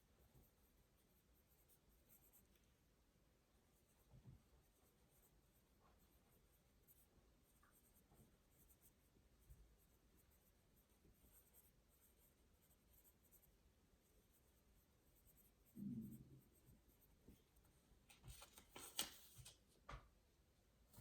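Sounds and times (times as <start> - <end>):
pen scratching on paper: 0.2 - 2.6, 6.8 - 17.2.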